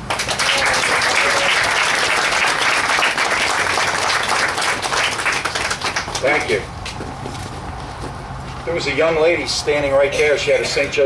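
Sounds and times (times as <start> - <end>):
audience applauding: 0.0 - 6.6.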